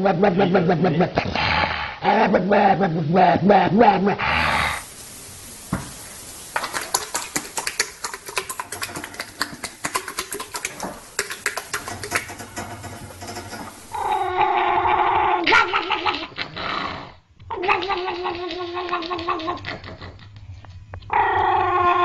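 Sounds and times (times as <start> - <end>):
dog growling: 0.0 - 4.9, 13.6 - 20.3, 21.1 - 22.0
dog whining: 13.8 - 16.2, 21.1 - 22.0.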